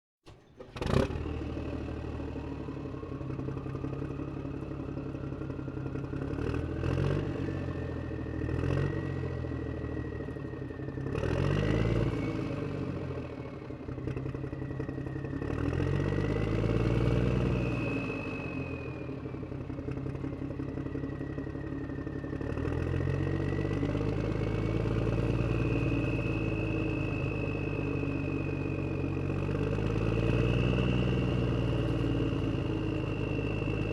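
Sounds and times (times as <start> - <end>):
vehicle engine revving: 0.3 - 2.8, 6.2 - 9.8, 11.0 - 13.2, 15.3 - 20.4, 22.2 - 33.9.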